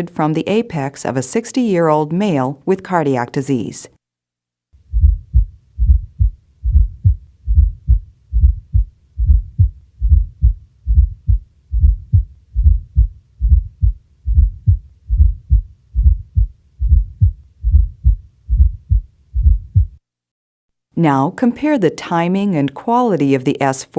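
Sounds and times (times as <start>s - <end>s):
heartbeat through stethoscope: 4.8s - 20.0s.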